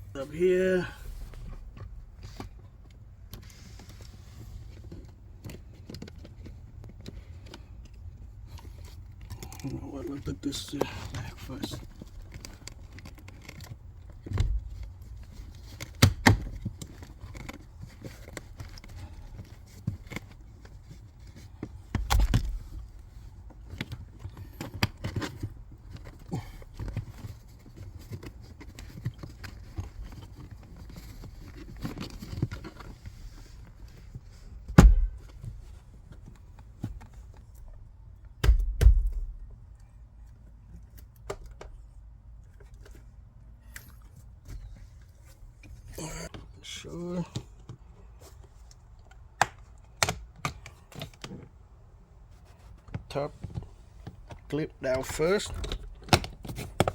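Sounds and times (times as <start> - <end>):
trim pieces thumping into place: 34.7 - 35.5.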